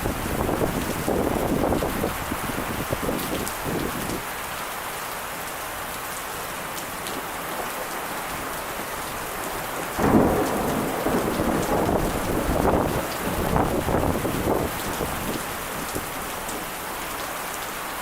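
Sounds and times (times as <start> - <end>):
steady rain hissing: 0.0 - 18.0
thunder clap and rumble: 10.0 - 16.1.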